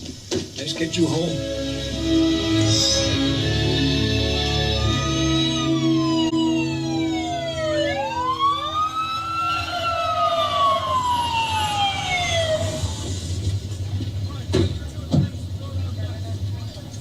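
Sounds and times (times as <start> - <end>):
police sirens wailing: 0.6 - 13.9.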